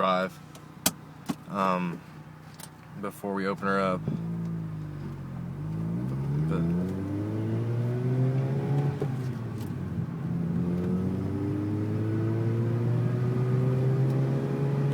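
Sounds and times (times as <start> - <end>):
rotary engine accelerating: 4.0 - 14.9.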